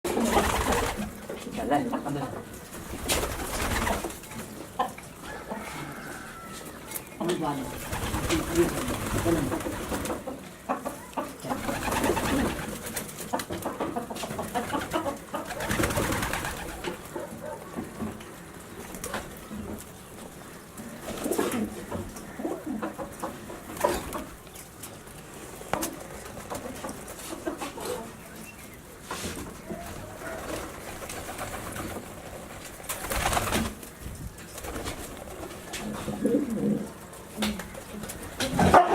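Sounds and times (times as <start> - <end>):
pigeons cooing: 0.1 - 6.6, 7.3 - 13.0, 20.8 - 24.4, 34.7 - 38.9.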